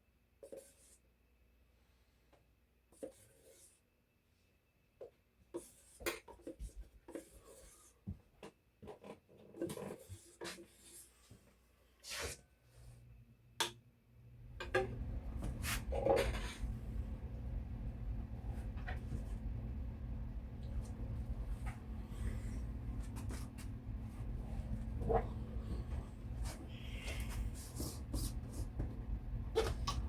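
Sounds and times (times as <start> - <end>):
steady low hum: 14.2 - 30.0.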